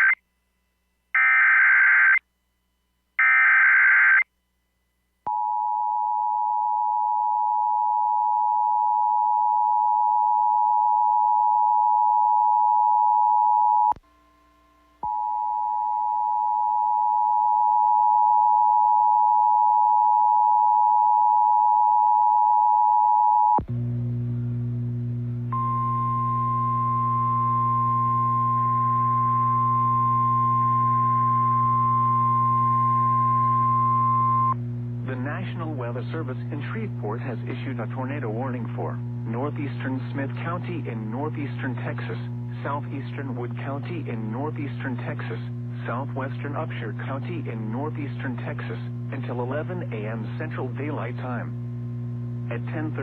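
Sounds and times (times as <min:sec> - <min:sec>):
low buzz: 0:23.6 - 0:47.8, 0:48.7 - 0:53.0.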